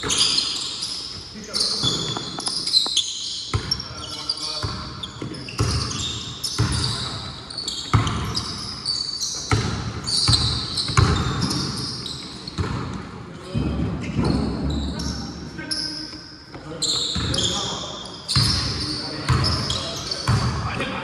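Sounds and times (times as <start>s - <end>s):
sneakers squeaking on court: 0.0s - 20.8s
basketball bouncing on gym floor: 1.8s - 3.8s, 4.5s - 8.8s, 9.4s - 15.1s, 17.1s - 17.6s, 18.3s - 20.7s.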